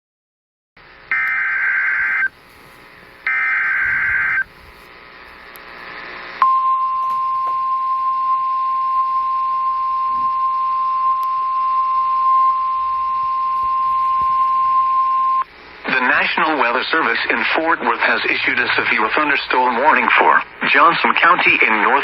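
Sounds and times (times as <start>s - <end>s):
faint radio hiss: 0.8s - 6.4s, 15.4s - 22.0s
buzzy digital data bursts: 0.9s - 6.4s
steady alarm tone: 1.1s - 4.9s, 6.4s - 15.5s.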